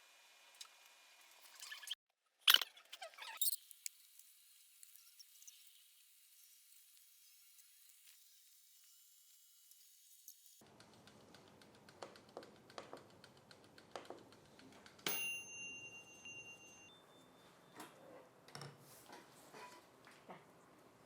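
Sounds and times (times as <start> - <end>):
toaster oven bell ding: 15.1 - 17.3.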